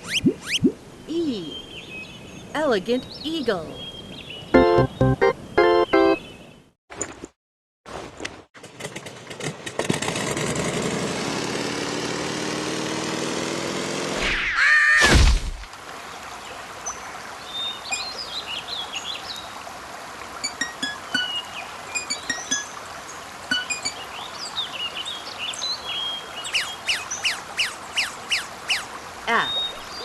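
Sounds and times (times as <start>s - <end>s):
small birds chirping: 0.0s - 6.7s, 20.4s - 30.0s.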